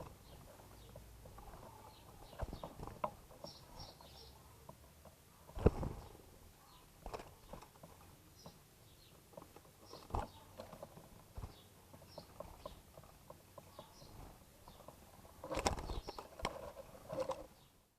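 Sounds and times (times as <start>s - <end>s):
birds pecking at corn: 0.0s - 17.7s
faint high bird chirps: 3.4s - 4.6s, 5.9s - 6.9s.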